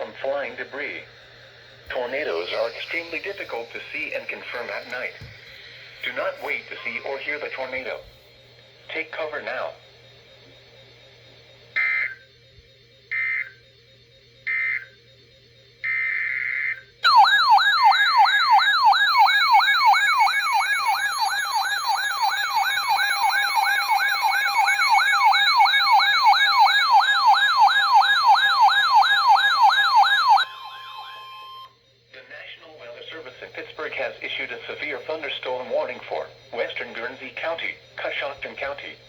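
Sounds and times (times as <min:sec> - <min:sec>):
chirping digital data tones: 0:00.0 - 0:08.1, 0:17.1 - 0:39.0
warbling electronic alert tone: 0:01.9 - 0:08.0, 0:15.9 - 0:31.7.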